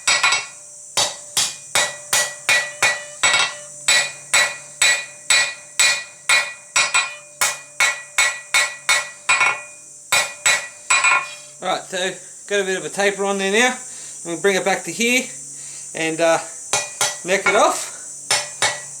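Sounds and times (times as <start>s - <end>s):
hammer striking steel on anvil: 0.0s - 11.4s, 16.7s - 18.9s.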